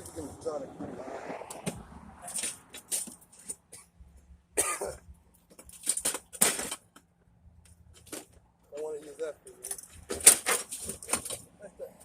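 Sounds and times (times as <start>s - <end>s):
clicks and scrapes: 0.8s - 3.9s, 5.4s - 8.9s, 9.6s - 11.5s.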